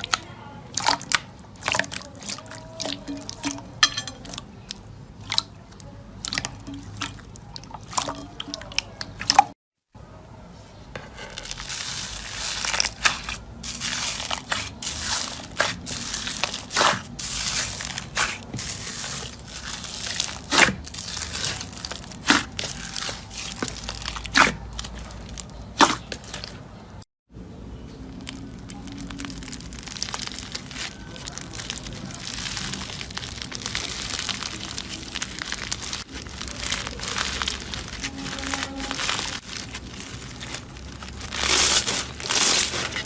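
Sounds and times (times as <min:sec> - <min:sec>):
slime squeezed crackling and popping: 0:11.5 - 0:26.7, 0:27.8 - 0:43.0.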